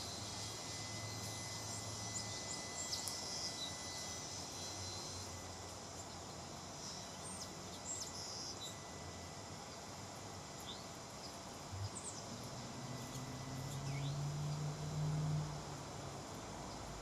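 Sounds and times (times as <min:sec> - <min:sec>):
insects droning: 0:00.0 - 0:17.0
small birds chirping: 0:10.6 - 0:14.7.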